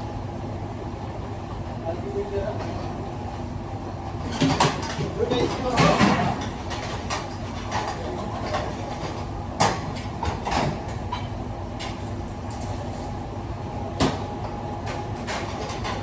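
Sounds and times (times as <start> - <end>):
kitchen equipment hum: 1.4 - 16.0
clattering utensils and pans: 4.2 - 12.0.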